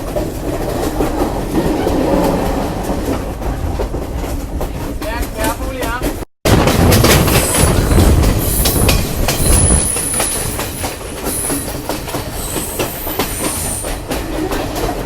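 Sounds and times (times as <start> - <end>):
train rumbling on rails: 0.0 - 15.0
wheels clicking over rail joints: 0.0 - 15.0
high wheel squeals: 7.4 - 14.0.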